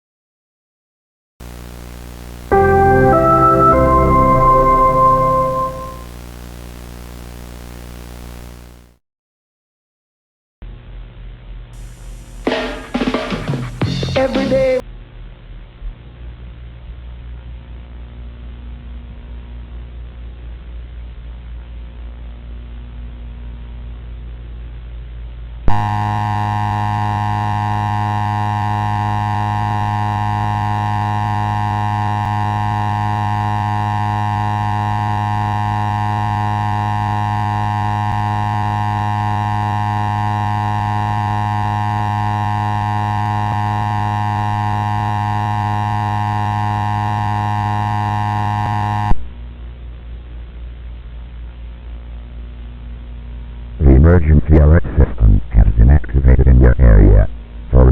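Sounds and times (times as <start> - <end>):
buzzy electronic alert tone: 2.5 - 6.1
faint hiss with low hum: 10.7 - 25.7, 49.4 - 57.9.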